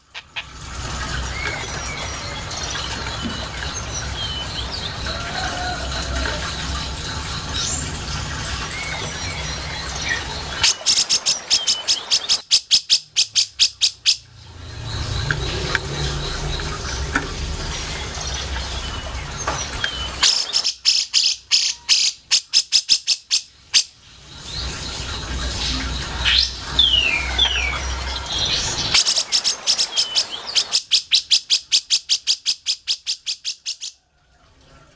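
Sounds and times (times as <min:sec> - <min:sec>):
bird singing sharp repeated notes: 0:08.7 - 0:23.9, 0:24.6 - 0:33.9.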